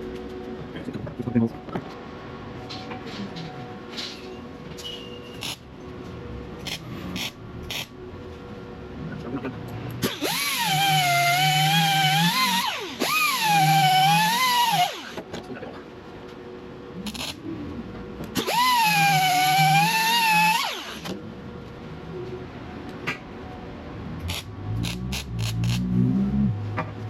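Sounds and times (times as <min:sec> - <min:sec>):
electric grinder on metal: 0:10.0 - 0:15.2, 0:18.4 - 0:21.1, 0:24.3 - 0:26.0.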